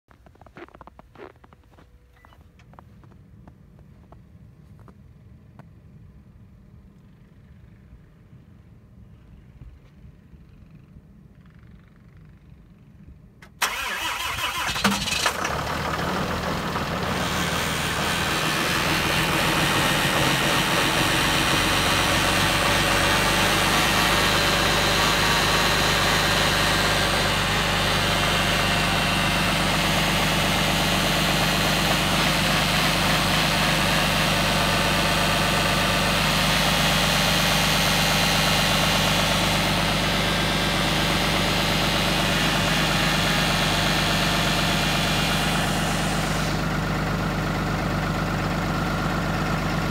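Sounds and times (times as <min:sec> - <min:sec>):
engine whine: 0:06.7 - 0:49.9
diesel engine starting and idling: 0:13.4 - 0:49.9.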